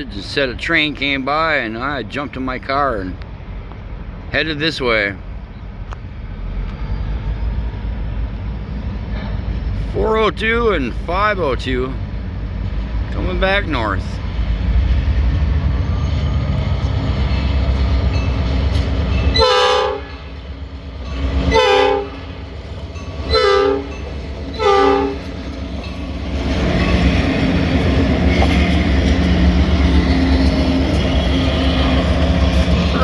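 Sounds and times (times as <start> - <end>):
train rumbling past: 0.0 - 33.0
locomotive air horn blasts: 19.4 - 20.3, 21.5 - 22.3, 23.3 - 23.9, 24.5 - 25.3.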